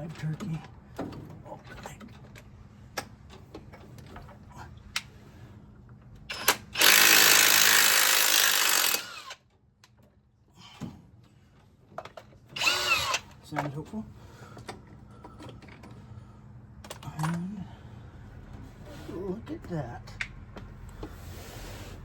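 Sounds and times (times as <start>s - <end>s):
power tool whining: 6.3s - 9.4s, 12.6s - 13.3s.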